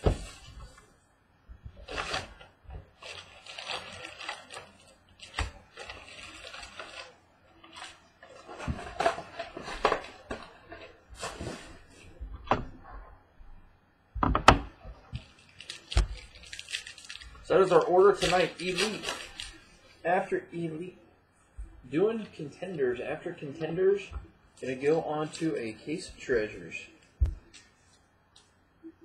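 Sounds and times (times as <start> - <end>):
wrapper and cardboard crinkling: 1.8 - 11.9, 15.1 - 19.7.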